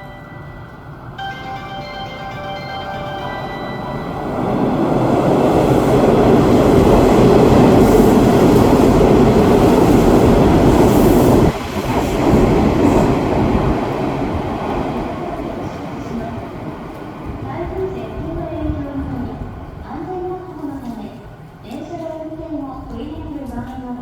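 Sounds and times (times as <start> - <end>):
electric train passing: 0.0 - 20.6
train wheels on rails: 0.0 - 24.0.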